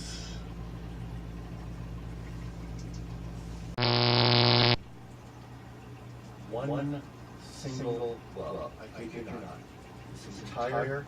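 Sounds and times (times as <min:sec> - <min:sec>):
low electrical hum: 0:00.0 - 0:11.0
loud electronic buzz: 0:03.8 - 0:04.8.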